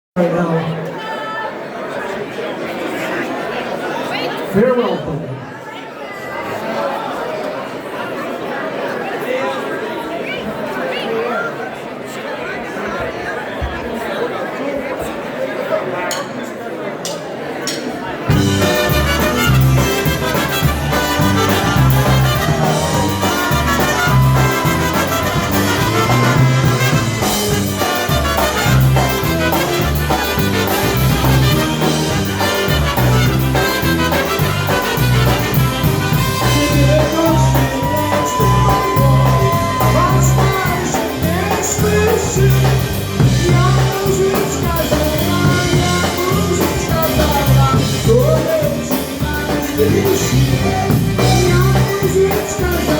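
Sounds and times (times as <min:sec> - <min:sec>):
oom-pah bass: 0:18.3 - 0:52.9
polka band playing: 0:18.3 - 0:52.9.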